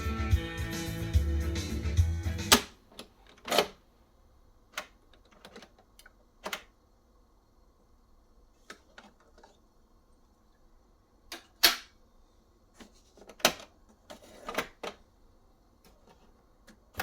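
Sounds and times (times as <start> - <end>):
cassette deck clicks and clunks: 2.4 - 3.8.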